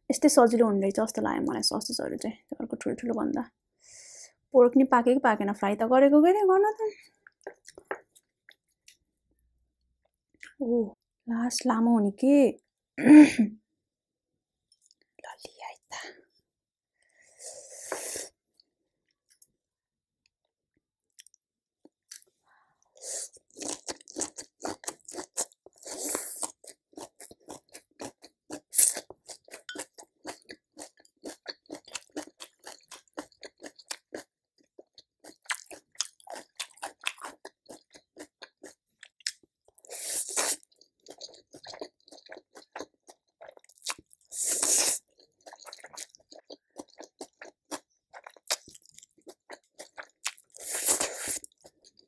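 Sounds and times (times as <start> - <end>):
person chewing food: 7.2 - 9.1, 21.1 - 52.0.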